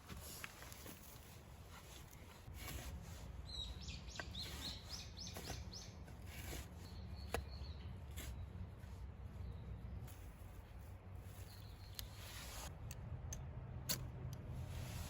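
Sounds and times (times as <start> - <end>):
bird singing: 3.4 - 6.1, 6.8 - 8.5
low outdoor rumble: 5.3 - 15.0.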